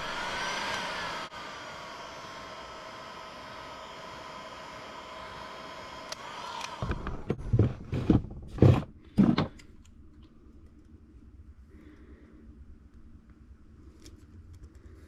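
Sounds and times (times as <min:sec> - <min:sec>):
heat gun blowing: 0:00.0 - 0:07.4.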